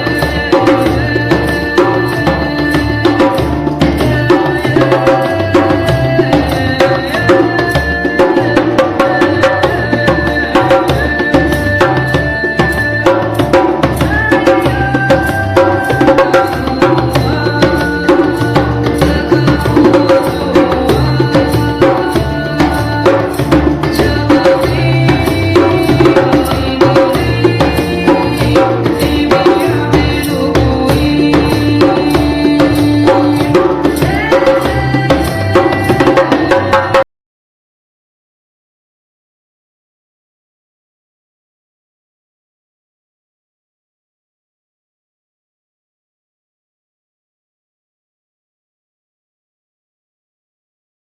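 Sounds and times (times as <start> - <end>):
djembe played by hand: 0.0 - 37.1.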